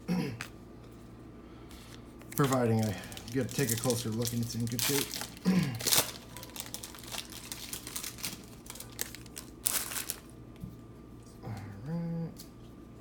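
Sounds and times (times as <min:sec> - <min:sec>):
cards clicking and rustling: 0:01.7 - 0:10.3
card pack wrapper crinkling and tearing: 0:01.7 - 0:10.4.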